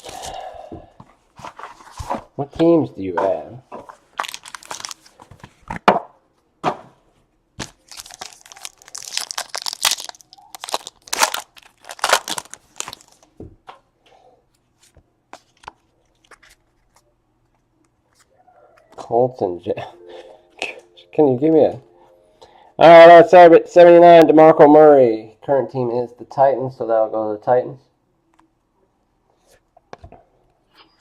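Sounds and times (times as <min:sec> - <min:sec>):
packaging tearing and crinkling: 0:04.2 - 0:05.2, 0:07.6 - 0:13.3.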